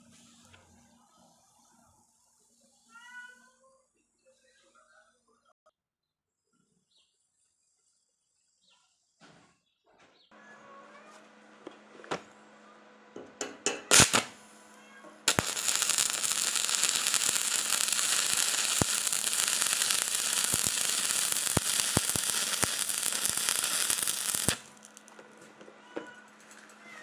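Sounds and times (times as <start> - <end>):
arc welding crackle: 13.9 - 14.4, 15.2 - 25.2.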